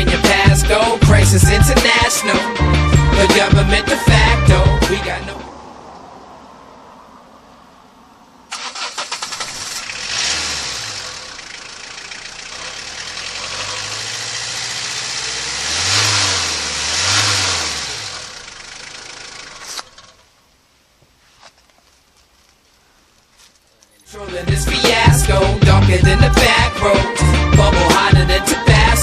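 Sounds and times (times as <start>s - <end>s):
car engine starting and revving: 0.0s - 20.3s.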